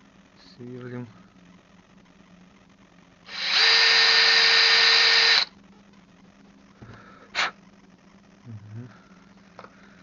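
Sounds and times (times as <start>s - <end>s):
small electric drill spinning: 3.3s - 5.5s.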